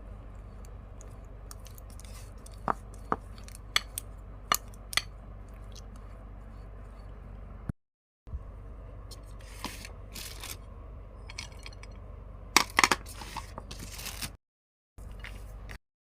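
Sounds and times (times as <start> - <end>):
steady low hum: 0.0 - 14.1
cookies crunching: 0.6 - 6.0.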